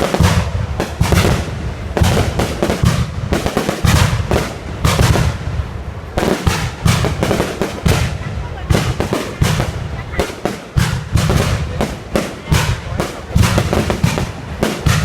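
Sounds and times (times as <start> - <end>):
fireworks bursting: 0.0 - 15.0.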